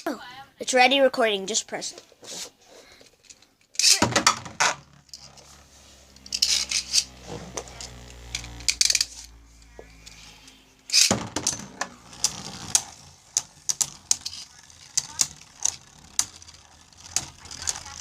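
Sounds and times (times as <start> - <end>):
spinning top whir: 3.8 - 18.0
spinning tops clattering: 3.8 - 18.0.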